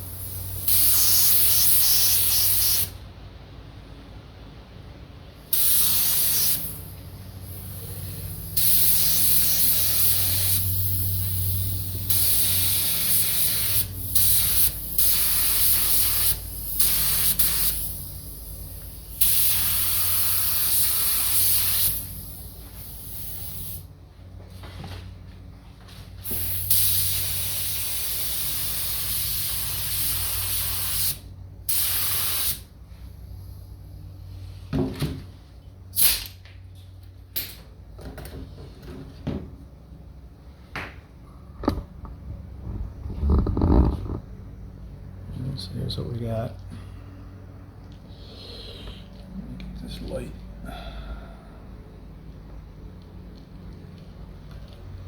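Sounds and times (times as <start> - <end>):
spray hissing: 0.0 - 2.9, 5.5 - 6.9, 7.5 - 23.8
low hum: 40.0 - 46.0.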